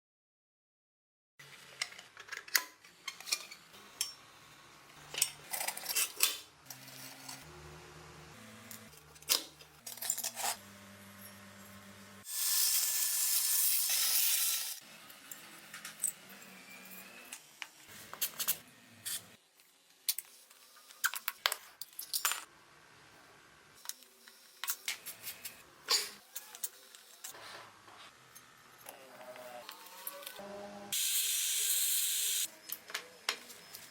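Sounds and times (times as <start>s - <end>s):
metal parts clinking: 9.2s - 10.6s, 21.0s - 22.5s.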